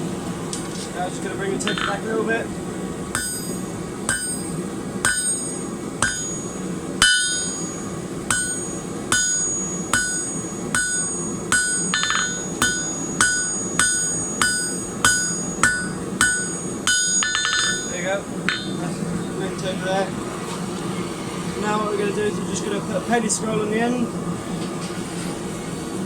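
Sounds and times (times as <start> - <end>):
hammer striking steel on anvil: 1.7 - 2.0, 3.1 - 18.9.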